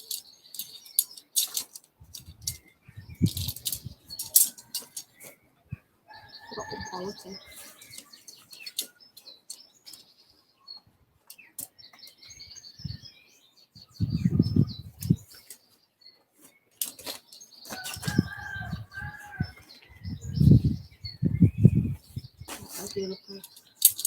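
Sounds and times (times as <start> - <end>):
tent poles clicking and knocking: 0.0 - 5.4, 6.9 - 10.1, 15.0 - 15.7, 16.7 - 19.6, 22.5 - 24.0.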